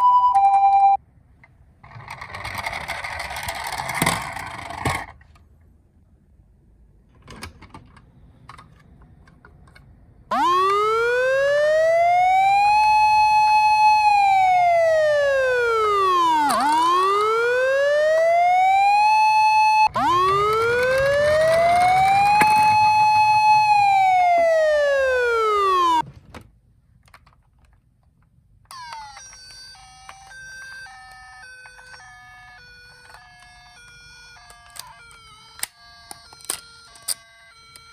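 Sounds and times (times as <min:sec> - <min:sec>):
toy ambulance siren wailing: 0:10.3 - 0:26.0, 0:28.7 - 0:37.9.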